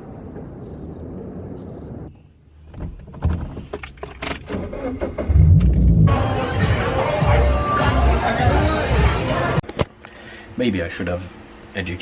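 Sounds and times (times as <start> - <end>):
car engine starting: 3.0 - 7.1
low rumble: 4.8 - 6.8.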